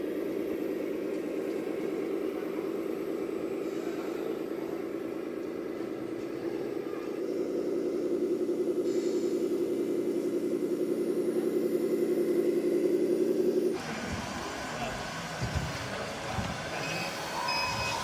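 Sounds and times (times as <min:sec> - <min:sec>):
simulated diesel engine idling: 0:00.0 - 0:18.0.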